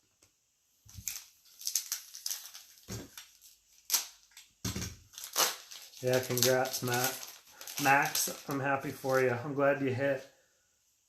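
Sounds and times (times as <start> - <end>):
foil wrappers crinkling: 0.9 - 9.6.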